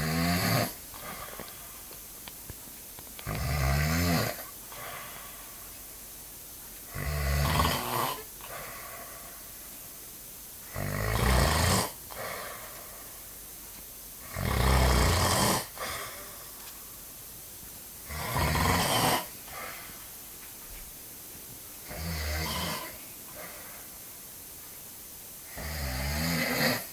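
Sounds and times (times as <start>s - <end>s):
heavy snoring: 0.0s - 1.8s, 3.2s - 5.6s, 6.9s - 9.4s, 10.7s - 13.2s, 14.2s - 16.6s, 18.0s - 20.0s, 21.8s - 23.9s, 25.4s - 26.9s.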